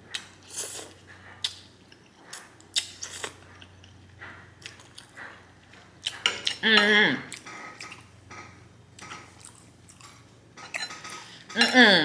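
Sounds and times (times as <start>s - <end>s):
chewing and wet mouth clicks: 1.4s - 4.0s, 4.6s - 6.6s, 9.0s - 10.1s.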